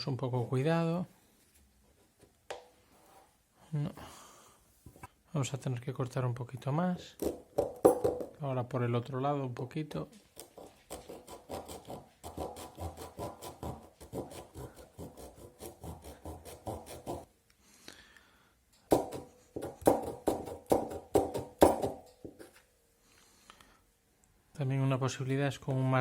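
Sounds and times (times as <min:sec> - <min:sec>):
saw rasping through plastic: 0:10.4 - 0:17.3.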